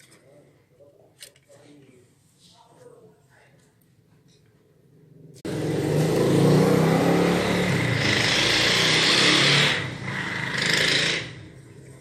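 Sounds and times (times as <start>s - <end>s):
vehicle engine running loudly: 5.5s - 12.0s.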